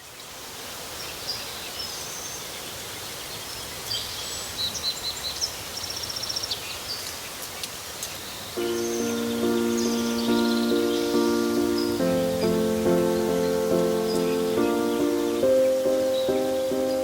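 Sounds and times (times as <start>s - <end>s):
steady outdoor hiss: 0.0s - 17.0s
birds chirping and whistling: 8.2s - 17.0s
rapid bird trill: 8.5s - 17.0s.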